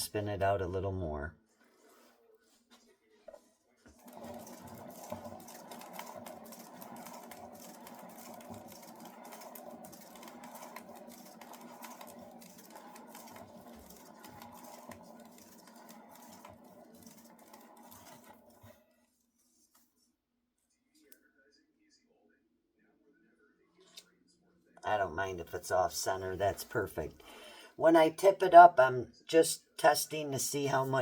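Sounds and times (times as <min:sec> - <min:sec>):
paint spinner whirring: 0:03.3 - 0:19.0
fast clicking: 0:04.0 - 0:18.7.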